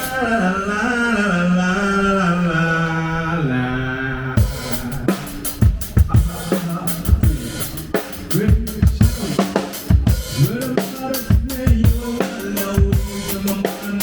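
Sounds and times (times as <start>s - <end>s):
cymbals: 0.0s - 0.4s, 4.4s - 14.0s
tom drum thuds: 4.4s - 14.0s.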